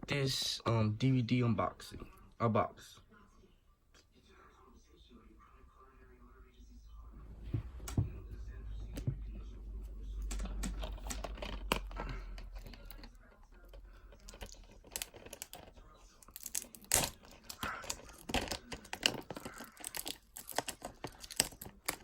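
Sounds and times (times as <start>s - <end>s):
packaging torn and crinkled: 14.2s - 22.0s.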